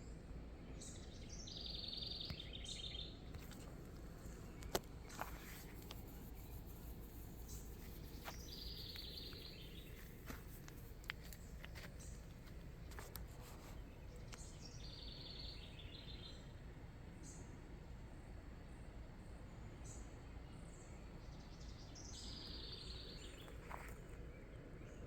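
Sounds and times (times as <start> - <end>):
low steady background noise: 0.0 - 25.0
songbird singing rapid high notes: 6.0 - 12.1.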